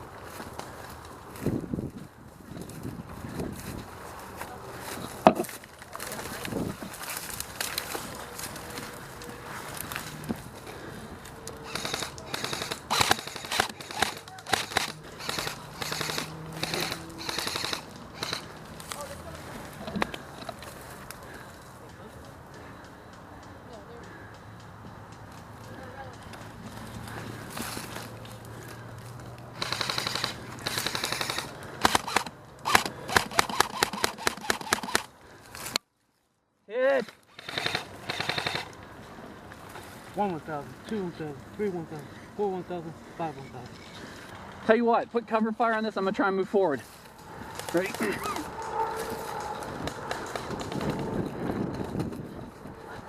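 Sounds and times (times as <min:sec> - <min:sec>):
airsoft rifle bursts: 0:11.6 - 0:19.1, 0:29.6 - 0:35.1, 0:37.0 - 0:38.8.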